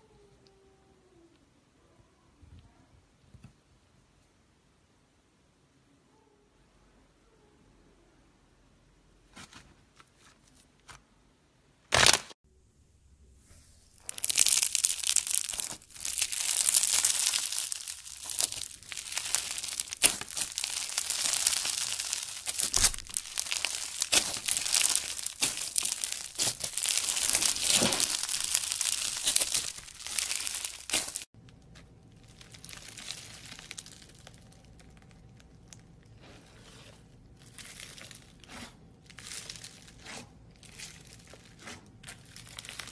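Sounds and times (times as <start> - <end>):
slime crackling and tearing: 11.9 - 12.4, 13.9 - 42.9
slime popping: 14.0 - 31.3.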